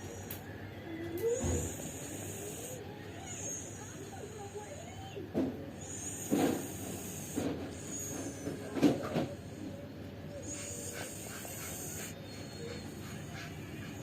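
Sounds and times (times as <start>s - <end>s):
cat snoring: 1.2s - 5.0s, 5.8s - 12.2s.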